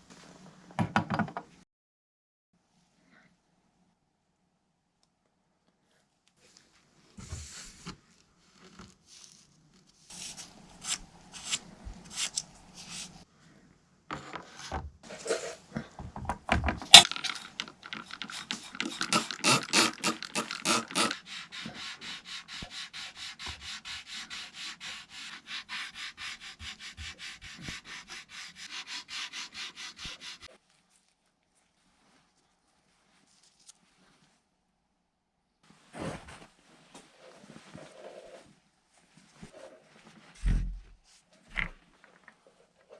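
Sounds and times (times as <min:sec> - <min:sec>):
hand rubbing small metal part: 0:10.1 - 0:13.2, 0:16.9 - 0:25.3.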